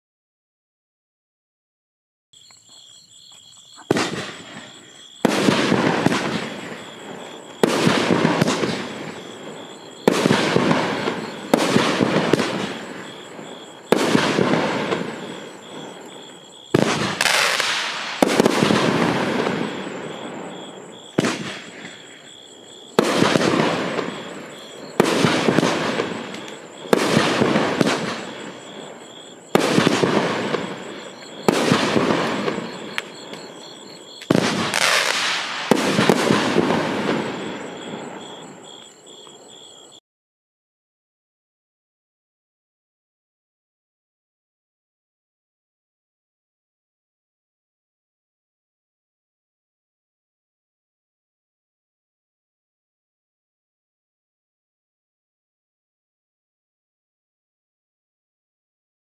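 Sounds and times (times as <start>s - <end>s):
firework bangs: 3.8s - 39.5s.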